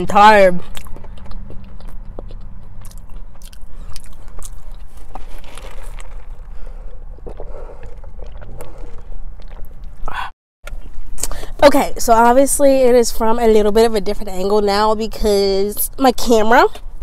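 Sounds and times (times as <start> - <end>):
person chewing crunchy fries: 0.0 - 11.4.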